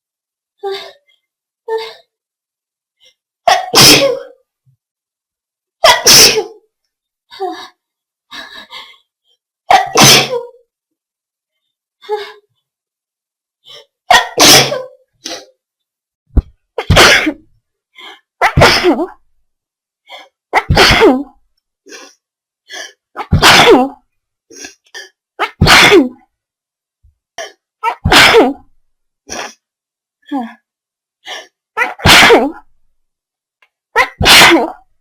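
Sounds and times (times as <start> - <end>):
person sneezing: 3.5 - 4.4, 5.8 - 6.6, 9.7 - 10.6, 14.1 - 15.5, 16.8 - 17.4, 18.4 - 19.2, 20.6 - 21.3, 23.2 - 26.2, 27.4 - 28.7, 31.8 - 32.6, 34.0 - 34.8.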